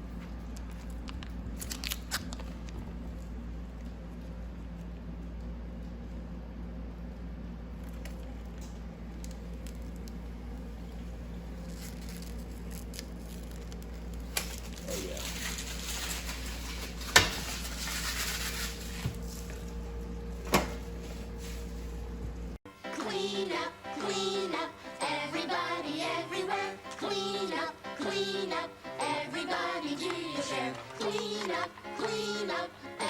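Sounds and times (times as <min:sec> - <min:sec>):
steady low hum: 0:00.0 - 0:33.0
packaging rustling and crinkling: 0:11.6 - 0:19.7.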